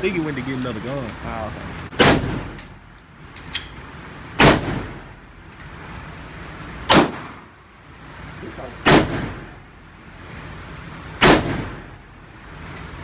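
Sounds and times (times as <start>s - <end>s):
gunshots with echo: 6.9s - 7.3s.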